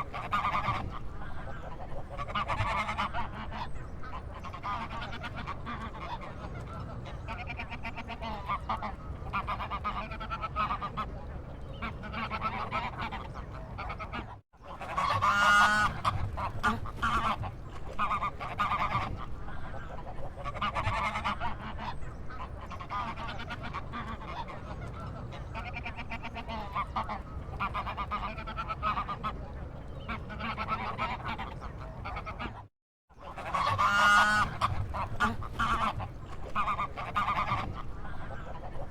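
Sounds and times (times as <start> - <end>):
waterfowl calling: 0.0 - 38.9
low background rumble: 33.2 - 38.9.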